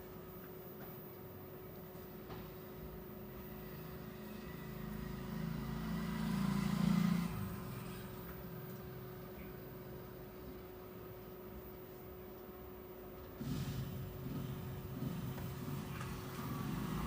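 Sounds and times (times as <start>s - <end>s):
faint steady hum: 0.0s - 17.0s
vehicle engine passing by: 3.6s - 8.4s, 13.4s - 17.0s.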